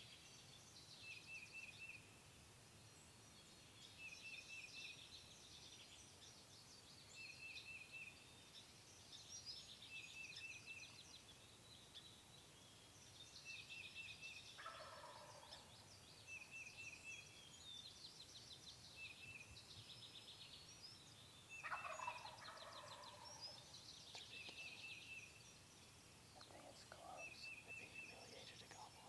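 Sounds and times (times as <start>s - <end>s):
songbirds singing: 0.0s - 29.0s
turkey gobbling: 21.6s - 23.2s.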